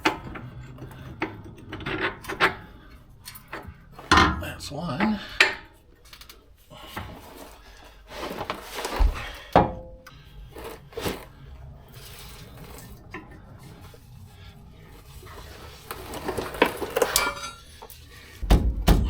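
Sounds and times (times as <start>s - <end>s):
metal tools clinking: 15.3s - 18.4s
dull thump: 18.4s - 19.0s.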